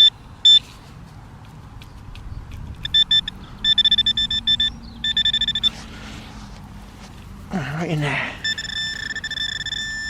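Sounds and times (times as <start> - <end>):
metal detector beeping: 0.0 - 0.7, 2.8 - 5.8, 8.4 - 10.0.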